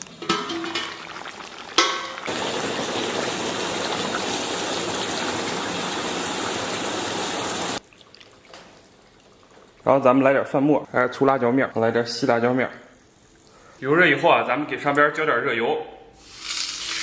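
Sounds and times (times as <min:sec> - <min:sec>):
vinegar sizzling on hot wok: 0:00.0 - 0:07.8, 0:16.2 - 0:17.0
broth boiling in a wok: 0:00.0 - 0:09.8.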